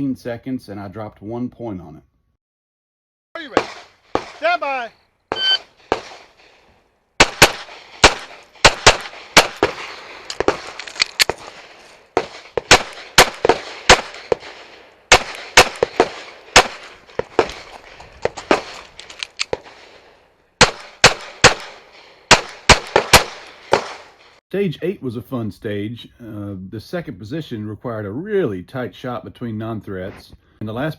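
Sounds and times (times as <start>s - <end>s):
pistol shots in rapid strings: 7.2s - 9.8s, 12.3s - 16.9s, 22.3s - 24.1s.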